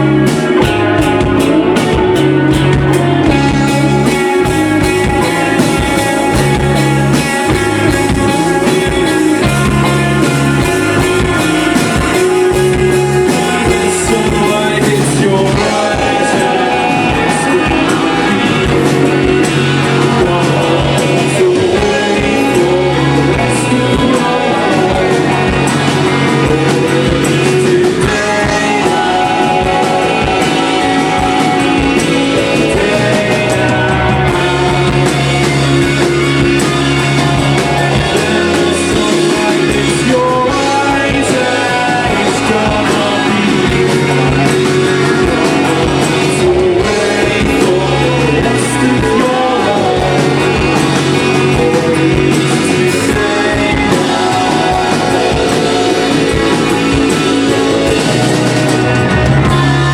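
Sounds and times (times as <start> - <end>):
person singing: 0.0 - 59.9
rock band playing live: 0.0 - 59.9.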